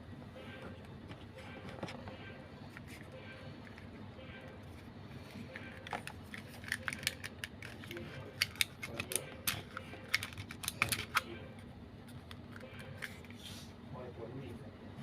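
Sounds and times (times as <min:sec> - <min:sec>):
small plastic parts clicking: 0:05.8 - 0:11.2.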